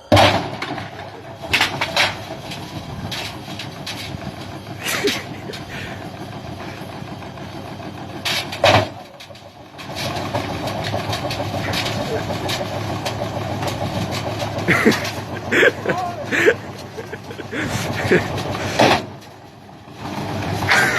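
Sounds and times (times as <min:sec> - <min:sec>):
sharp knocks and bangs: 0:00.1 - 0:02.3, 0:08.3 - 0:09.1, 0:18.1 - 0:19.2
steady mechanical running: 0:00.8 - 0:20.9.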